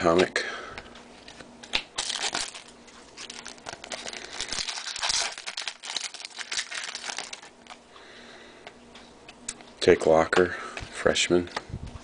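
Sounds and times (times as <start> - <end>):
trading cards rustling: 1.2 - 7.8.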